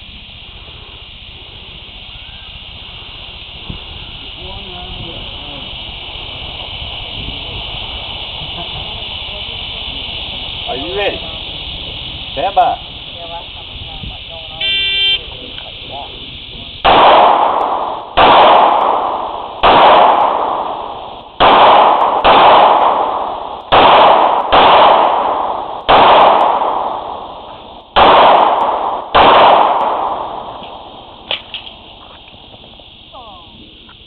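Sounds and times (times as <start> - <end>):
pistol shots with echo: 16.8 - 31.7.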